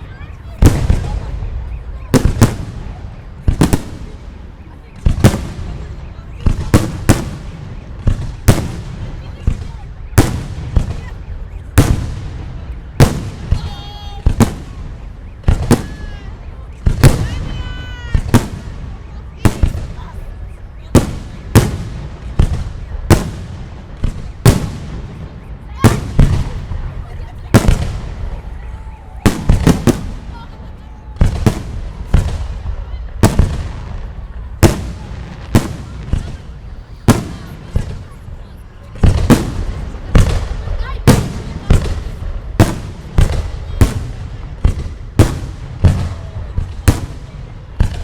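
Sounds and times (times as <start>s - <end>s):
fireworks bursting with loud bangs: 0.0s - 48.0s.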